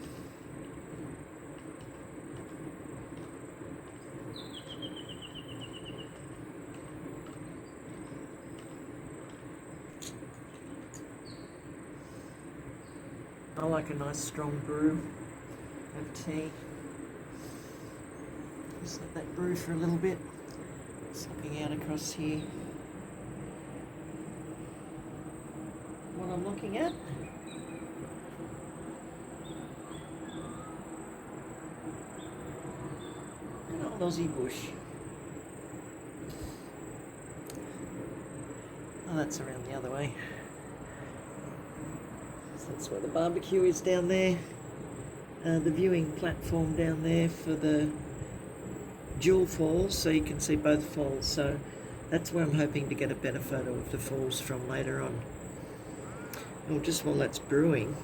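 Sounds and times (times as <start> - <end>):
high insect drone: 0.0 - 58.0
low steady hum: 0.0 - 58.0
bird trill: 4.3 - 6.2, 29.4 - 30.9.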